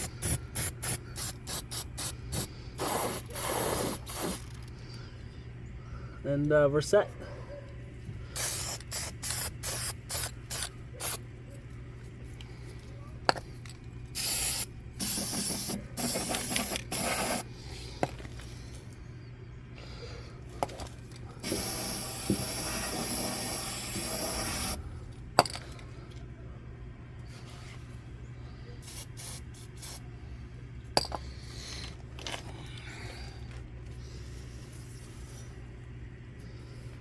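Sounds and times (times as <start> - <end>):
aerosol can spraying: 0.0 - 4.6, 8.4 - 11.2, 14.2 - 17.4, 21.4 - 24.8.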